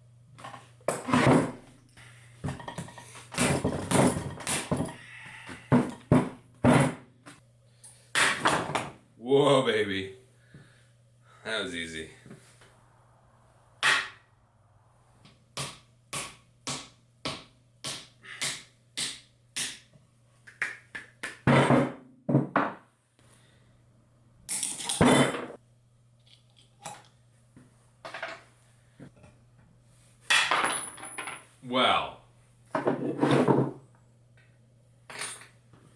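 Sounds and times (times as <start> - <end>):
steady low hum: 9.0 - 20.4.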